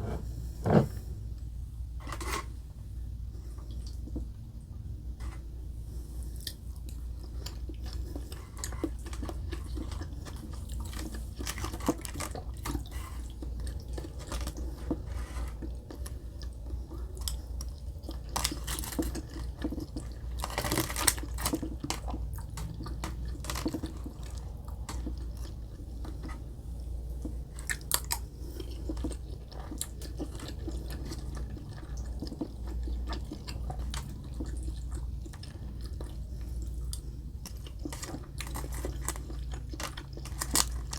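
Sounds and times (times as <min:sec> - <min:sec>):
steady low hum: 0:00.0 - 0:07.0
chewing and biting food: 0:06.2 - 0:40.9
breaded cutlet crunching: 0:37.3 - 0:40.9.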